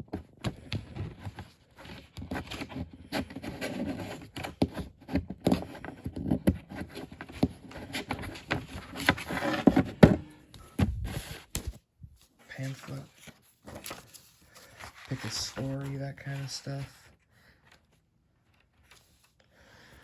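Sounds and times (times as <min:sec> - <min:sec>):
paper rustling: 0:00.4 - 0:09.9, 0:10.7 - 0:19.4.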